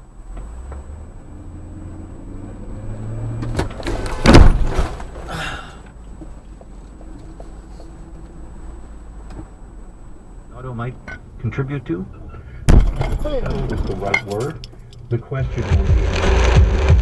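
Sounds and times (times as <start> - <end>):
car engine revving: 0.0 - 4.7, 15.2 - 17.0
collision crash: 3.8 - 5.3, 12.7 - 14.2.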